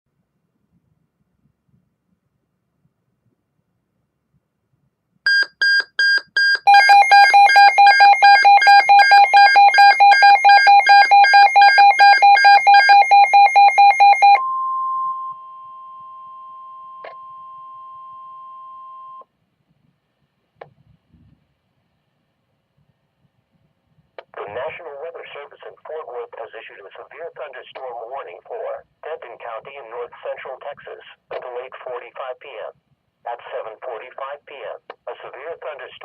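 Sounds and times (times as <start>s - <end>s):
fast electronic beeping alarm: 5.3s - 14.4s
steady alarm tone: 6.7s - 15.3s.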